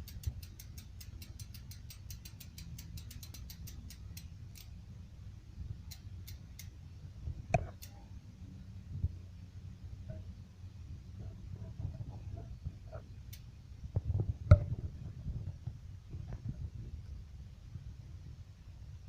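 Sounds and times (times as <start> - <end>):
bicycle hub freewheeling clicks: 0.0 - 4.8, 5.8 - 6.8, 7.6 - 8.1, 13.2 - 13.5.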